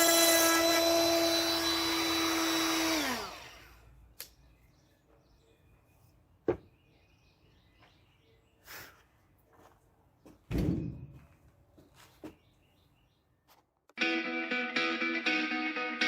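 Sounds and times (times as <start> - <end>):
wood router whining: 0.0 - 3.8.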